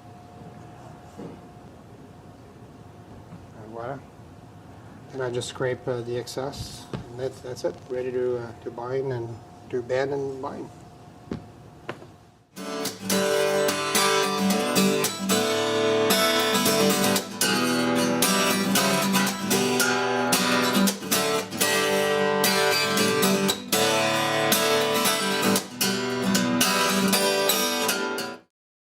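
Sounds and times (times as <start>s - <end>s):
strummed acoustic guitar music: 12.6s - 28.5s.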